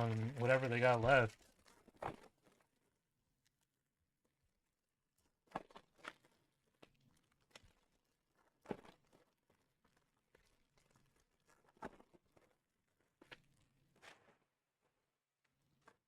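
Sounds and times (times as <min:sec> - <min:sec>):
foil wrappers and cards crinkling: 0:00.0 - 0:02.9.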